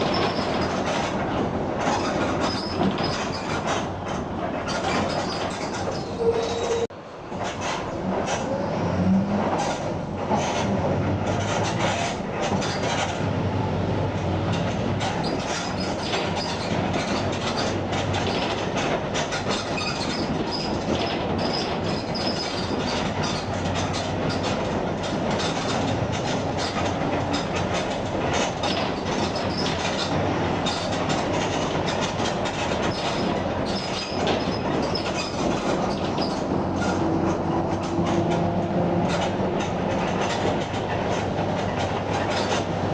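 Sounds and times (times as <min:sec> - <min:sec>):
road noise: 0:00.0 - 0:19.9, 0:21.6 - 0:42.9
bus engine running: 0:07.1 - 0:42.9
body rattles and knocks: 0:15.0 - 0:42.7.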